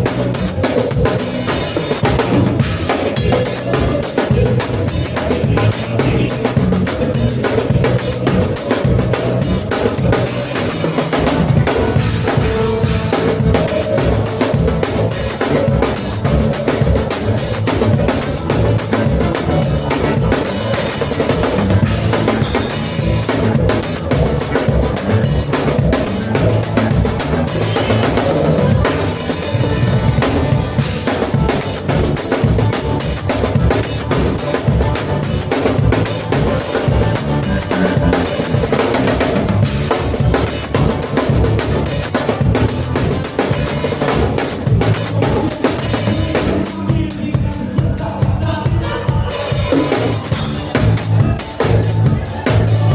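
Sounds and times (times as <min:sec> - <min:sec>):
button accordion melody: 0:00.0 - 0:46.8
drum kit beat: 0:00.0 - 0:52.9.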